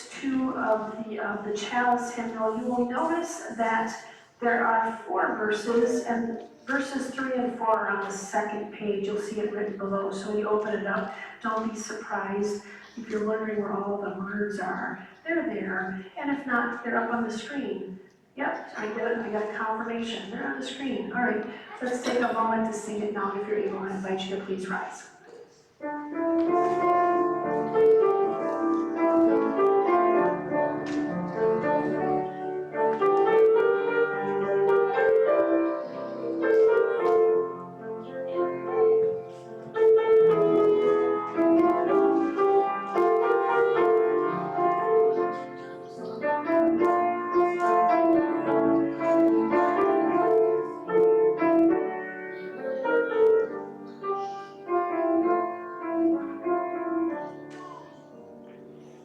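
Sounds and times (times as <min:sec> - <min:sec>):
piano playing hymn chords: 0:25.8 - 0:59.0.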